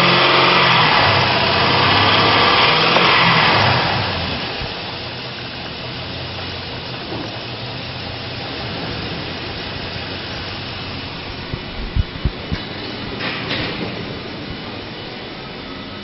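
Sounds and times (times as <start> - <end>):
truck engine running: 0.0 - 16.0
low thumps: 7.1 - 15.1.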